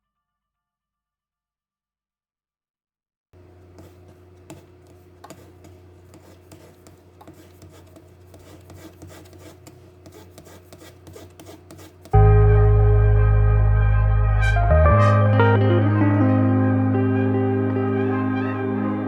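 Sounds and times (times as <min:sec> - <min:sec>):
low electrical hum: 0:03.4 - 0:14.7.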